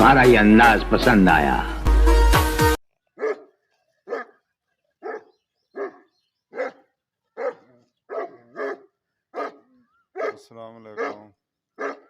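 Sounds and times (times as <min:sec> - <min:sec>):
dog barking: 0:03.2 - 0:04.4, 0:05.0 - 0:12.0.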